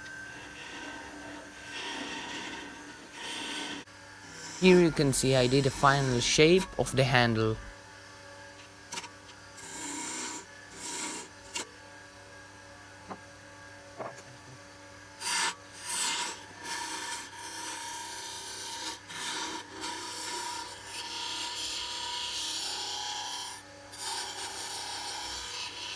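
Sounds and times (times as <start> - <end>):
turning tool scraping wood: 0.0 - 7.7, 15.2 - 25.9
wood lathe humming: 0.0 - 8.3, 8.9 - 12.3, 15.1 - 25.9.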